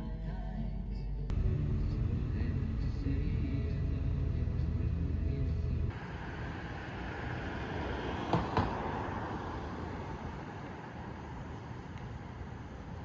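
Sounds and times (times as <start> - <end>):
low rumble: 0.7 - 6.0
vehicle passing by: 1.3 - 13.0.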